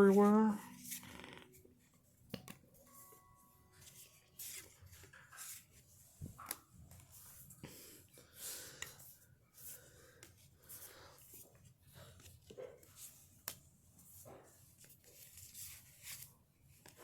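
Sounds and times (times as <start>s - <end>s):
trading cards rustling and clicking: 3.8s - 7.3s.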